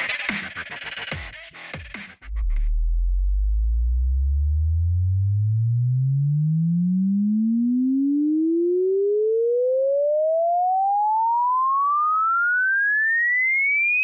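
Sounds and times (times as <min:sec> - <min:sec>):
sine wave tone sweeping upward: 0:02.9 - 0:14.0.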